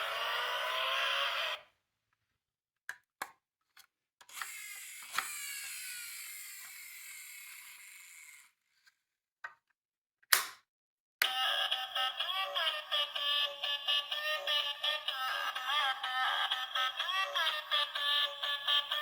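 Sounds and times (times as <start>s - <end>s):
toy car rolling with mechanical whir: 0.0s - 1.6s, 4.2s - 8.6s.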